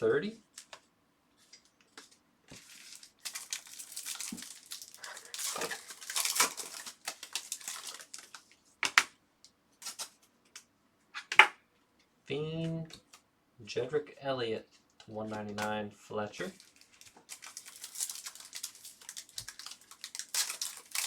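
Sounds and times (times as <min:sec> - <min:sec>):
foil wrapper tearing and crinkling: 0:02.6 - 0:09.0, 0:09.8 - 0:10.2, 0:16.5 - 0:21.0
cards clicking: 0:08.8 - 0:09.1.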